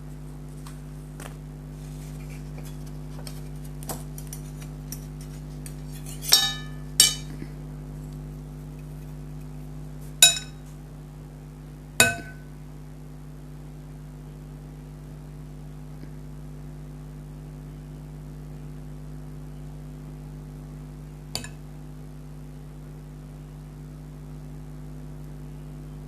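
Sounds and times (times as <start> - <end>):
steady low hum: 0.0 - 26.0
tableware clinking: 6.1 - 7.4, 10.2 - 10.6, 12.0 - 12.4.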